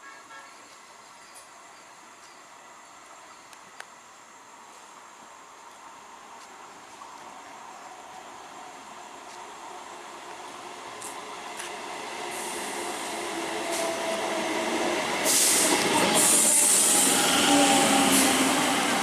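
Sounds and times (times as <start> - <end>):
train traction motors humming: 8.0 - 19.0
high hiss: 10.8 - 19.0.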